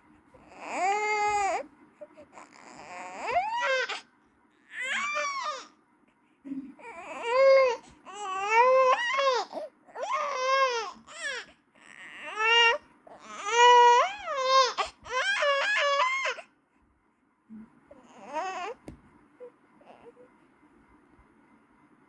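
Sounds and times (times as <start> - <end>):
baby crying: 0.5 - 1.6, 2.4 - 4.0, 4.7 - 5.7, 6.8 - 16.5, 18.0 - 18.8.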